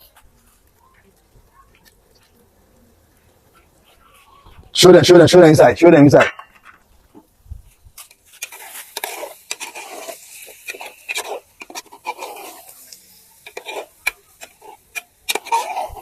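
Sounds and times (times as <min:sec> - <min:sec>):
spoon stirring thick soup: 0:07.9 - 0:16.0.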